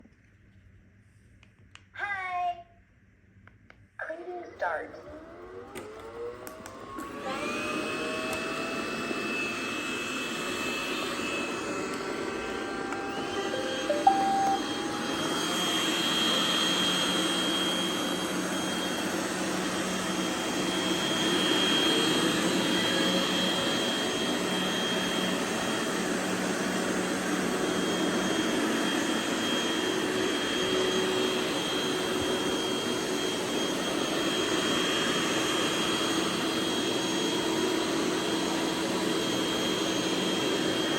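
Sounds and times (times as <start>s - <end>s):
short electronic beep: 13.6s - 14.8s.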